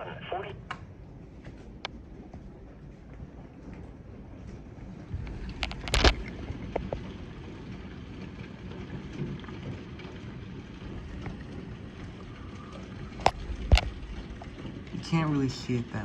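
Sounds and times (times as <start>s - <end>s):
rain hissing: 1.6s - 16.0s
hailstones knocking: 5.0s - 16.0s.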